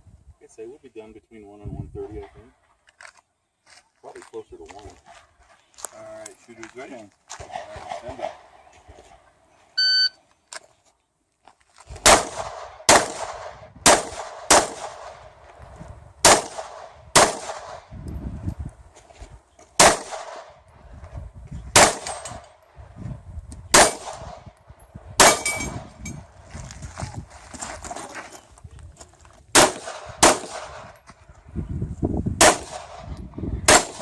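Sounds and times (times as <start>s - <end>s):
shot timer beep: 9.8s - 10.2s
pistol shots: 12.0s - 15.2s, 16.2s - 17.8s, 19.8s - 20.6s, 21.7s - 22.4s, 23.7s - 24.4s, 25.2s - 25.8s, 29.5s - 30.9s, 32.4s - 33.1s, 33.7s - 34.0s.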